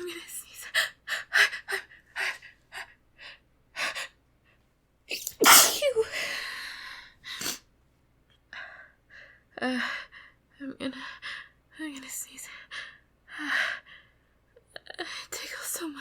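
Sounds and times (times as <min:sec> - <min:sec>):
woman sneezing: 0:05.2 - 0:06.1.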